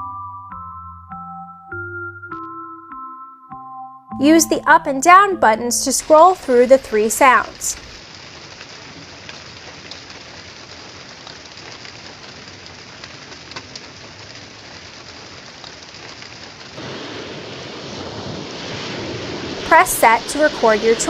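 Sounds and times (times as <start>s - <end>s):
rain soundtrack from small speaker: 4.2s - 21.0s.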